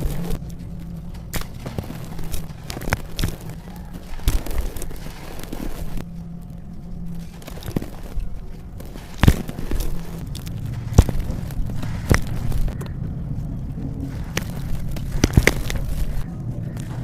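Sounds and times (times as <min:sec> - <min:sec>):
dirt and coal crunching: 0:00.0 - 0:17.0
low steady hum: 0:00.0 - 0:17.0.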